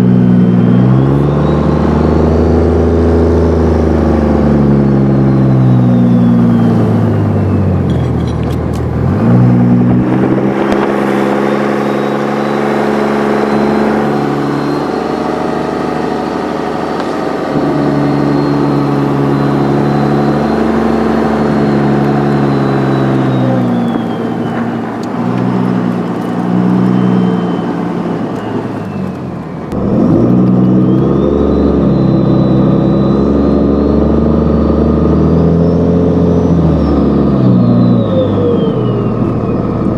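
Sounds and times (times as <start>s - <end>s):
turbo whistle: 0.0s - 8.4s, 9.0s - 39.9s
diesel pickup engine accelerating: 0.0s - 39.9s.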